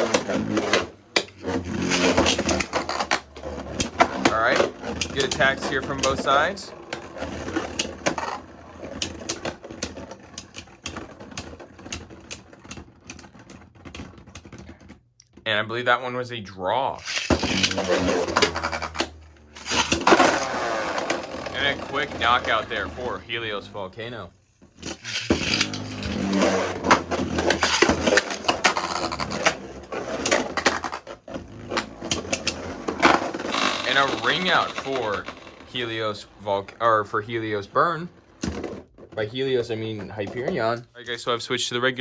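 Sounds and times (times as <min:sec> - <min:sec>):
spinning tops clacking: 0:00.0 - 0:12.4, 0:17.0 - 0:23.7, 0:24.8 - 0:31.0, 0:31.7 - 0:36.4.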